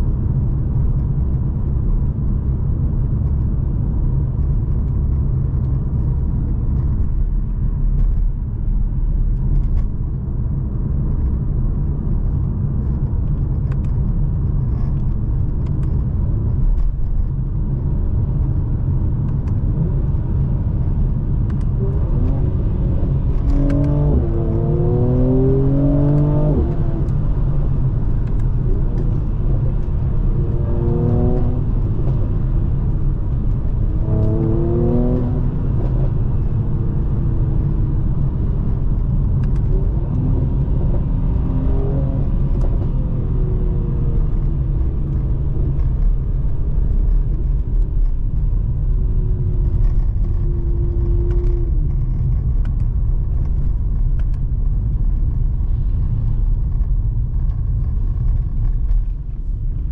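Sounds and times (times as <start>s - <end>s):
low road rumble: 0.0s - 59.9s
car engine accelerating: 16.6s - 59.9s.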